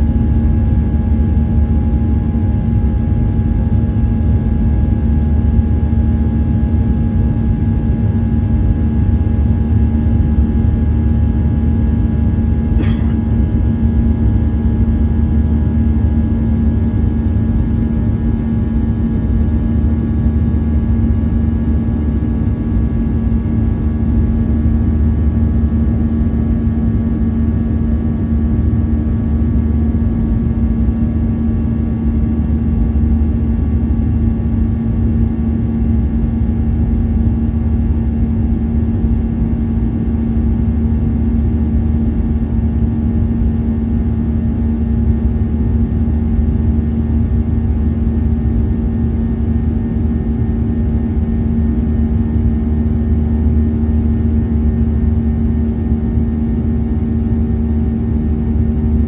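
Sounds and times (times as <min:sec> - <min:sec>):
jet engines rumbling in cabin: 0:00.0 - 0:55.3.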